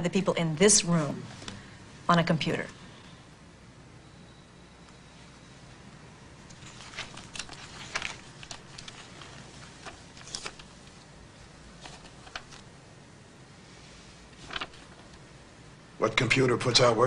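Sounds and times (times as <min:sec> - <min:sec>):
faint rustles: 0:06.5 - 0:11.1, 0:13.6 - 0:15.2.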